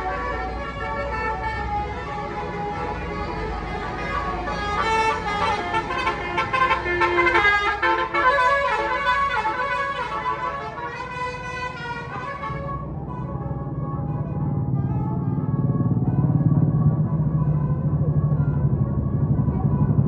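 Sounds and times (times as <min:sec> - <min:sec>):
low engine rumble: 0:00.0 - 0:20.0
musical bus horn playing tune: 0:00.0 - 0:20.0.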